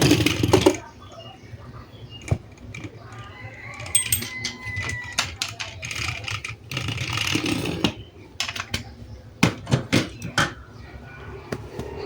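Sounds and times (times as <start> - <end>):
plastic toy parts clattering: 3.8 - 7.6.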